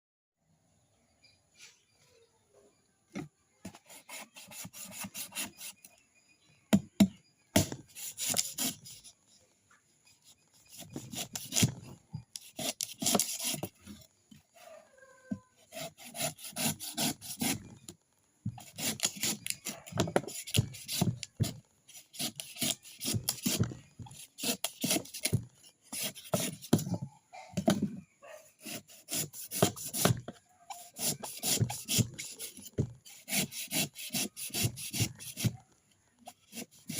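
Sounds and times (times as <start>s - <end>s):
coconut being scraped: 3.6s - 5.9s, 7.6s - 9.2s, 10.2s - 14.8s, 15.6s - 17.9s, 18.5s - 27.0s, 28.6s - 36.9s.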